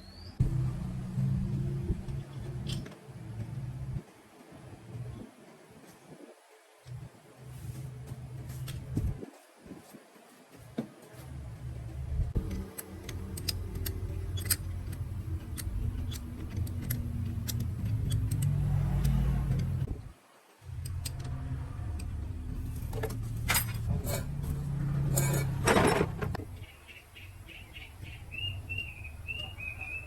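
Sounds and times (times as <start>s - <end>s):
light metallic clicks: 12.4s - 19.9s.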